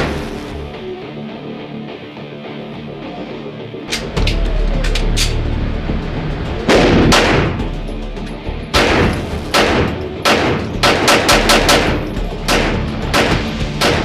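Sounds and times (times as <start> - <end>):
background music: 0.0 - 14.0
handgun shots with echo: 3.9 - 5.4, 6.7 - 7.7, 8.8 - 14.0.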